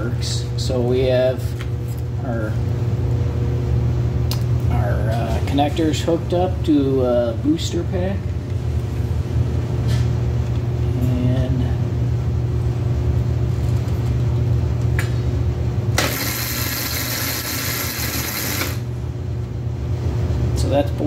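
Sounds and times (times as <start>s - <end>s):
electric motor humming: 16.0s - 18.9s.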